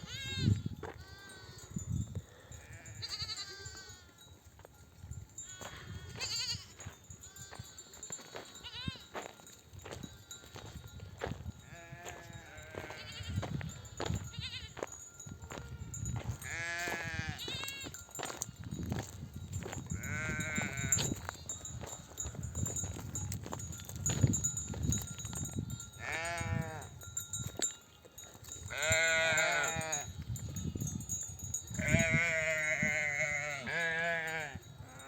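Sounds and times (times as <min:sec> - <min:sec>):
sheep bleating: 0:02.7 - 0:04.2, 0:05.5 - 0:07.7, 0:11.7 - 0:13.4, 0:14.3 - 0:14.8, 0:16.4 - 0:17.9, 0:20.0 - 0:21.0, 0:26.0 - 0:26.9, 0:28.7 - 0:30.1, 0:31.8 - 0:35.0.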